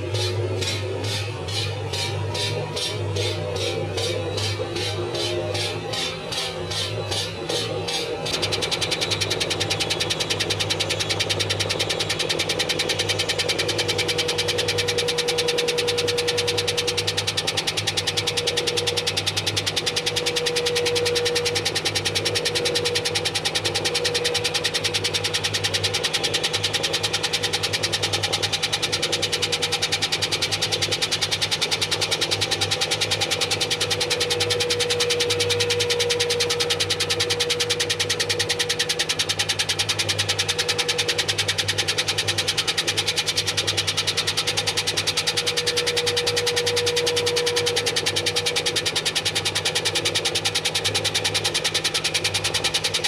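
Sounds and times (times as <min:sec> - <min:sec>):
washing machine motor hum: 0:00.0 - 0:53.0.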